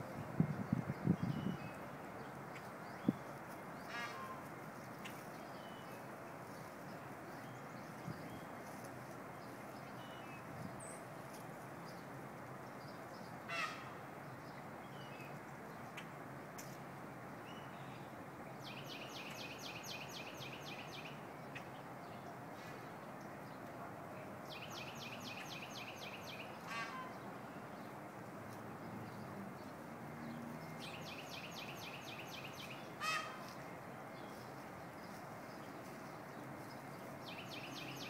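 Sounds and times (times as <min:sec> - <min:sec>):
low background hiss: 0:00.0 - 0:38.0.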